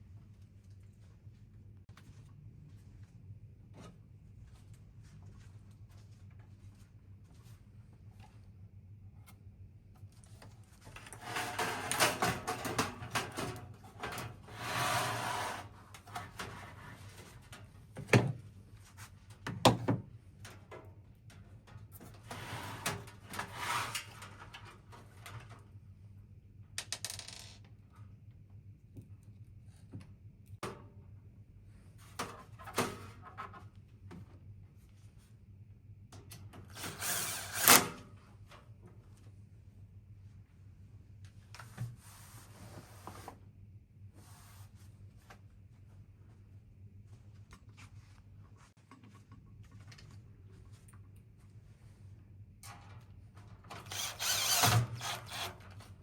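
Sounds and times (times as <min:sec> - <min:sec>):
rustling and scraping of parts: 0:10.0 - 0:18.0, 0:20.5 - 0:25.8, 0:44.1 - 0:56.0.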